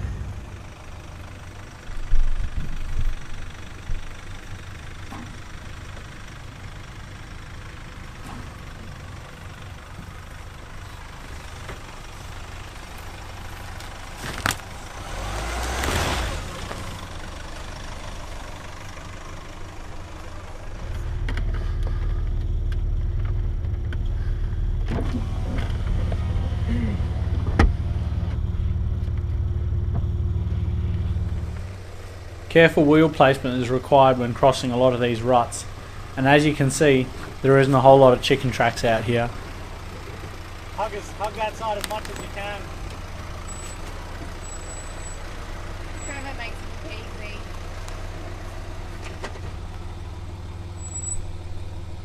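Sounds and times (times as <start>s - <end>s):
diesel engine running: 0.0s - 52.0s.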